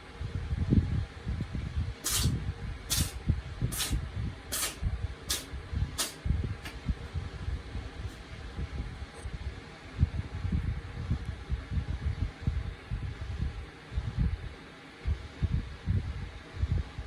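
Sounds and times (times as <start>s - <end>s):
cat sneezing: 2.0s - 6.2s.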